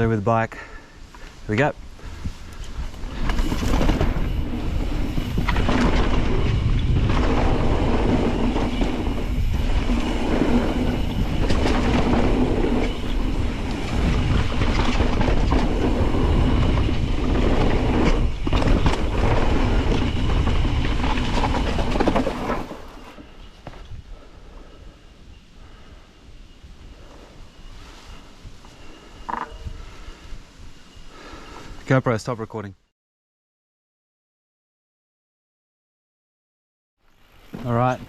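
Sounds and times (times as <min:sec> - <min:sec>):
bike tyres rolling over dirt: 0:00.0 - 0:26.1, 0:26.7 - 0:31.7, 0:37.1 - 0:38.0
bike chain and frame clatter: 0:02.5 - 0:23.7.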